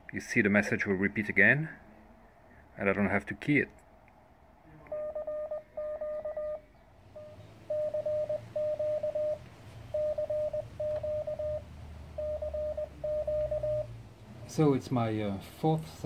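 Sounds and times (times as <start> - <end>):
morse code tone: 4.8 - 14.0.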